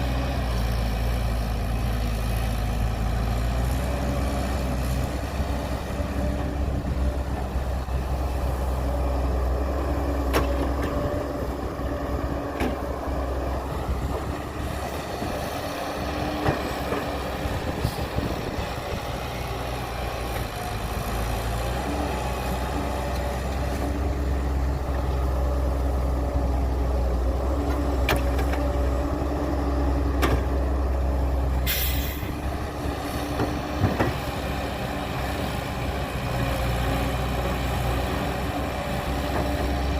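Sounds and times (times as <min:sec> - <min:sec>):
heavy diesel engines running: 0:00.0 - 0:39.9
short hiss: 0:31.7 - 0:32.3.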